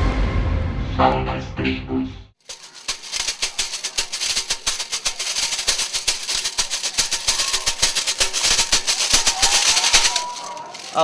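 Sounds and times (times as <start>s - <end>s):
shakers rattling: 2.4s - 11.0s.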